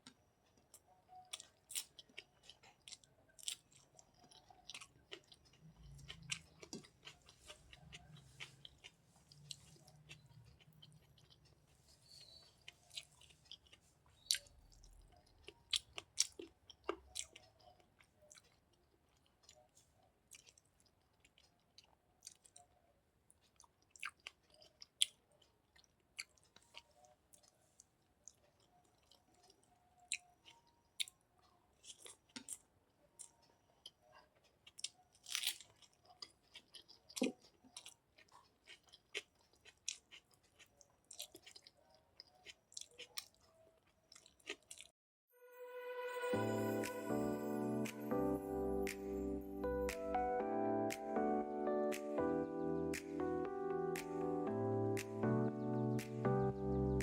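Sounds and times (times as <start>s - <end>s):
person chewing food: 0.0s - 44.9s.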